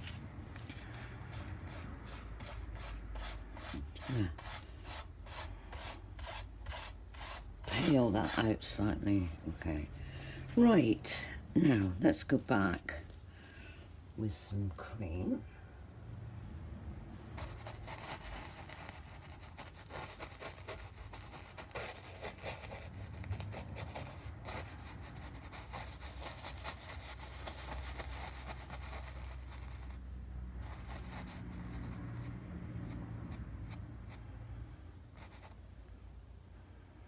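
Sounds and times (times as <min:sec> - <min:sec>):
scratchy paintbrush strokes: 0:00.0 - 0:08.6, 0:17.4 - 0:34.4, 0:35.2 - 0:35.8.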